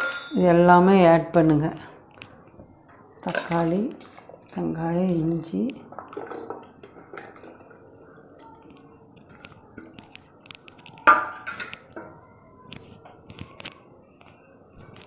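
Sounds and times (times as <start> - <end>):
utensils clinking on metal pot: 0.0 - 0.5, 3.2 - 7.8, 11.0 - 11.8.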